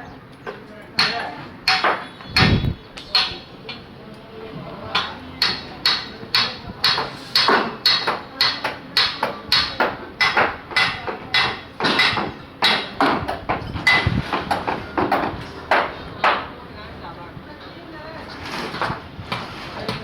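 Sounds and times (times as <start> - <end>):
hammer striking with ringing blows: 1.0 - 3.8, 5.0 - 16.5.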